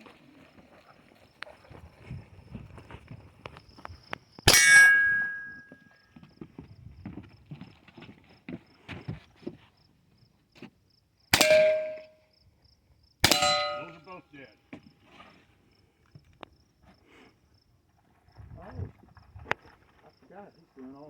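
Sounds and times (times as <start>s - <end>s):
steel target ringing: 4.5s - 5.8s, 11.4s - 12.2s, 13.2s - 14.1s.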